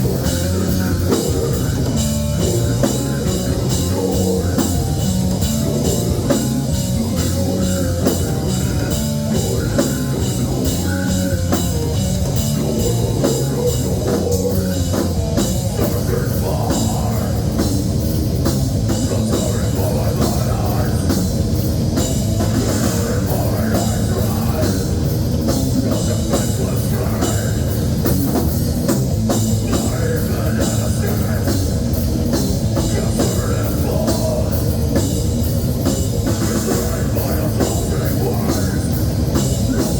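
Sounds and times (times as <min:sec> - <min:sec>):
drum kit playing: 0:00.0 - 0:39.9
electric guitars: 0:00.0 - 0:39.9.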